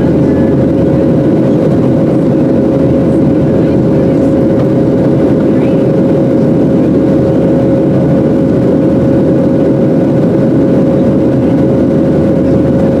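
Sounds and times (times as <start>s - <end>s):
aircraft cabin engine drone: 0.0s - 13.0s
steady hum tone: 0.0s - 13.0s.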